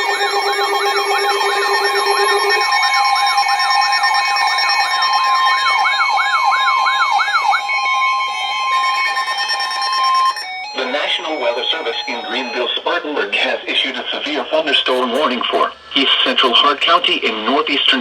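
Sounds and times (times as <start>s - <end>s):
siren-like pitch sweep: 0.0s - 12.8s, 14.8s - 15.8s
steady electronic alert tones: 0.0s - 12.9s, 14.7s - 17.0s.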